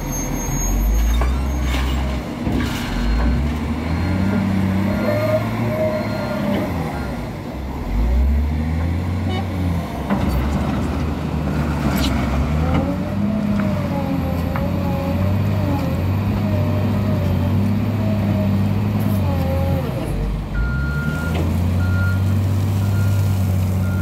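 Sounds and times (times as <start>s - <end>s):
diesel engine running with whine: 12.6s - 24.0s.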